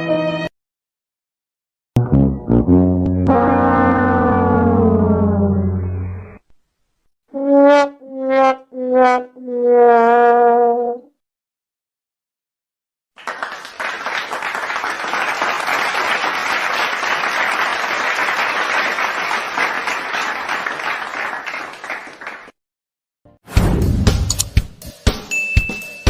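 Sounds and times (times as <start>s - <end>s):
crowd clapping: 13.2s - 22.6s.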